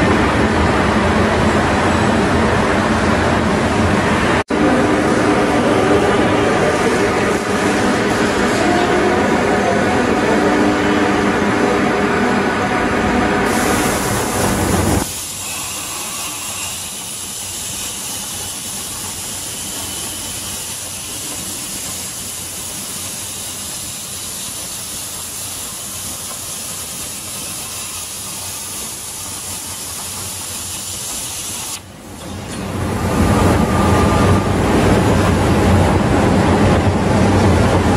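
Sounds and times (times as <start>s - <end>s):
cutting torch hissing: 13.5s - 31.9s.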